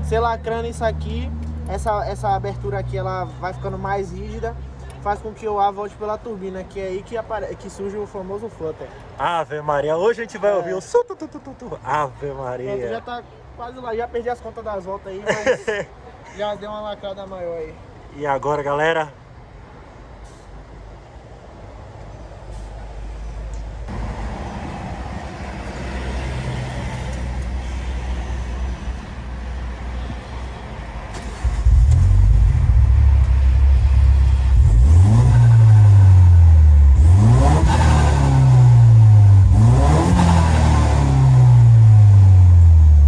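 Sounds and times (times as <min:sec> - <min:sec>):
car engine revving: 0:31.1 - 0:43.0.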